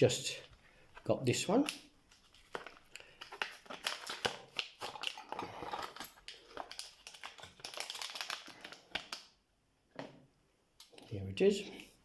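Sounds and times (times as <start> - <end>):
stiff plastic packaging crinkling: 1.0 - 9.4.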